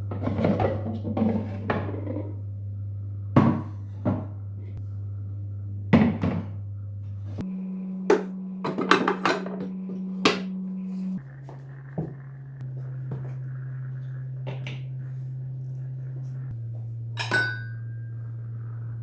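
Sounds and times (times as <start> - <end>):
steady low hum: 0.0 - 19.0
kitchenware knocking and clattering: 3.4 - 4.3, 8.1 - 9.6, 17.2 - 17.8.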